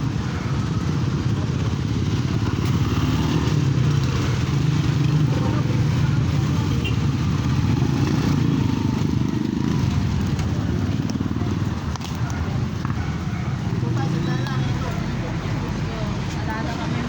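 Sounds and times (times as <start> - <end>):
motorcycle engine idling: 3.7 - 17.0.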